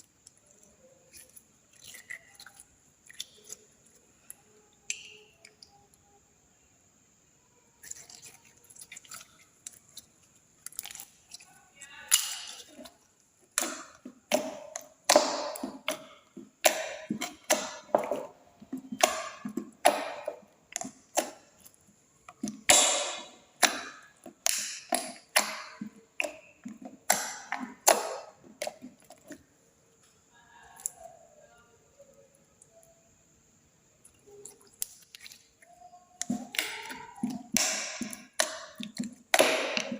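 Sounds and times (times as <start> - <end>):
slime squishing and popping: 13.5 - 29.4, 36.2 - 39.9.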